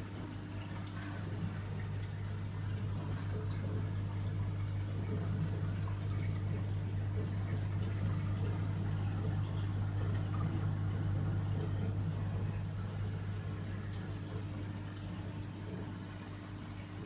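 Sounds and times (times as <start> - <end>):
aquarium pump hum: 0.0 - 17.0
water trickling and bubbling: 0.0 - 17.0.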